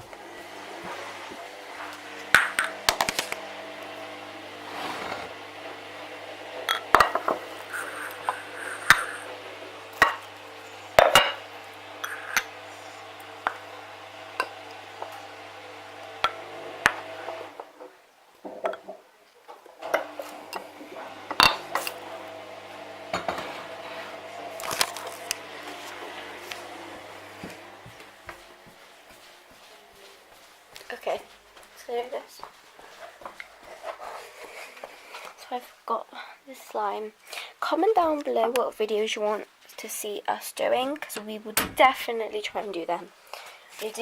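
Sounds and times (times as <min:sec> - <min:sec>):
steady low hum: 0:00.0 - 0:17.8.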